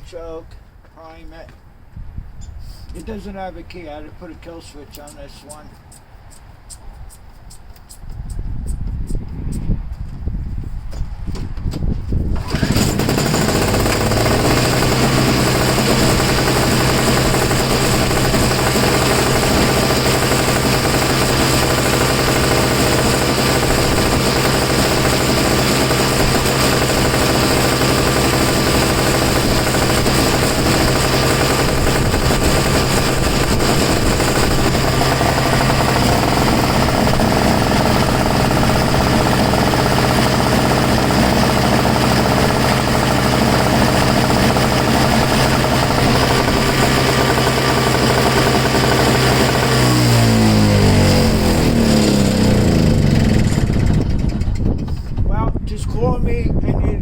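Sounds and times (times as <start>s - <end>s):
snow blower engine rattling: 12.3s - 55.3s.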